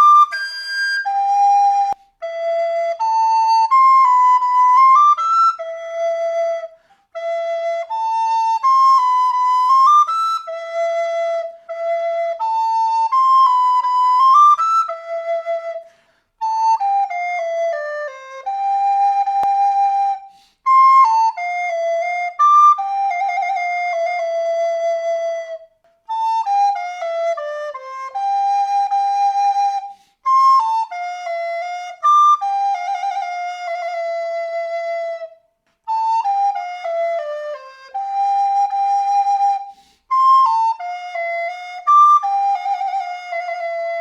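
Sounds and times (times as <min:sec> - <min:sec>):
recorder playing a melody: 0:00.0 - 0:44.0.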